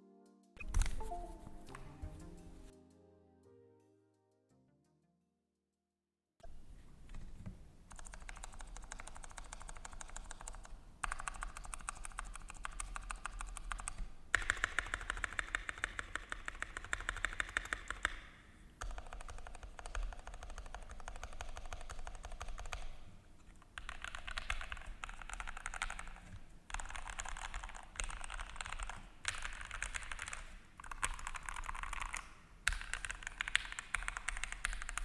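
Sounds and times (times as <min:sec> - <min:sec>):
mechanical keyboard typing: 0:07.1 - 0:23.1, 0:23.7 - 0:35.0.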